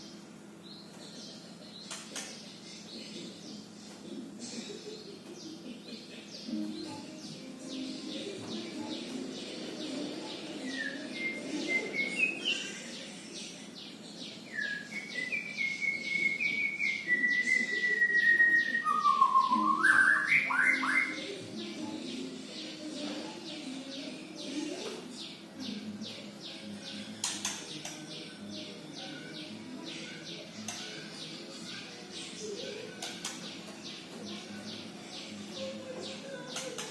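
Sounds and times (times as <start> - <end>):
bird whistling song phrases: 10.6 - 12.8, 14.5 - 21.3.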